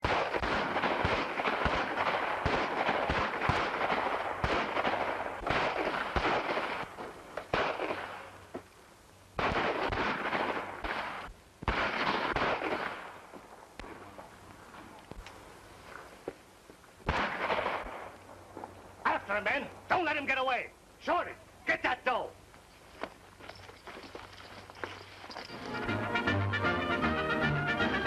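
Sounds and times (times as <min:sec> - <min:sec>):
volley of gunshots: 0:00.0 - 0:08.4, 0:09.4 - 0:13.2, 0:17.0 - 0:18.7.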